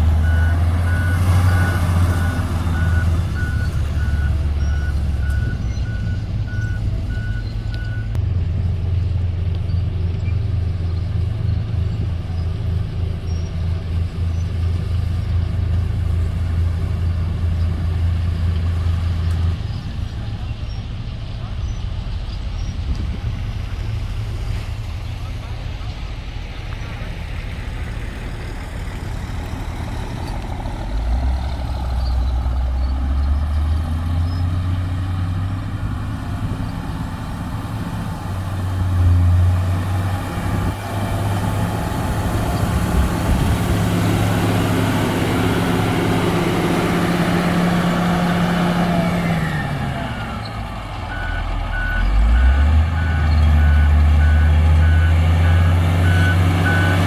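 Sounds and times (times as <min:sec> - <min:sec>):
diesel engine working: 0:00.0 - 0:57.0
reversing alarm beeping: 0:00.2 - 0:08.2, 0:51.1 - 0:57.0.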